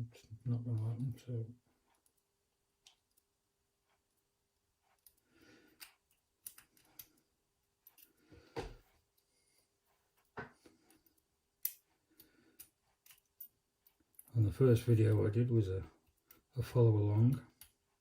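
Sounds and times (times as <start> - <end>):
small metal lock parts clicking: 5.8 - 7.2, 11.0 - 14.3.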